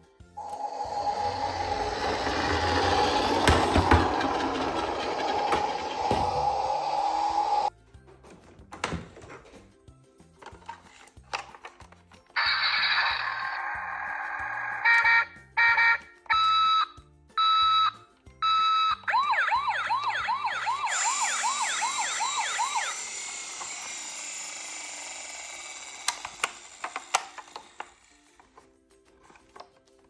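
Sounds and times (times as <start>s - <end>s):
hiss: 0.4s - 7.7s
toy siren yelp: 12.4s - 26.5s.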